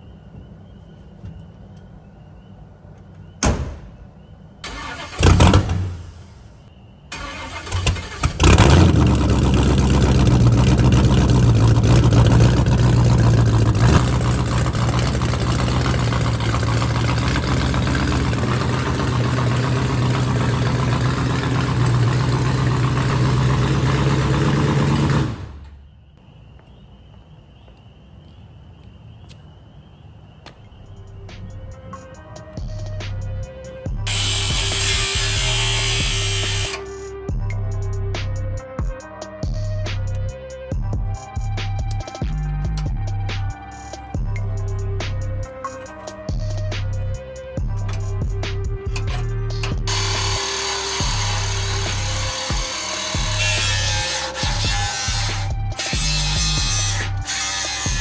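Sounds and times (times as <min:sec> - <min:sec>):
truck engine cranking: 0:04.6 - 0:25.8, 0:34.1 - 0:37.0, 0:41.9 - 0:58.0
truck engine idling: 0:07.2 - 0:25.7, 0:34.0 - 0:36.9, 0:41.9 - 0:57.3.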